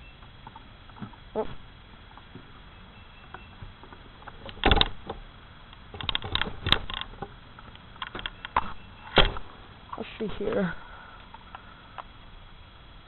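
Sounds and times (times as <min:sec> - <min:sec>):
handling knocks and clicks: 0:03.3 - 0:05.2, 0:05.8 - 0:10.0.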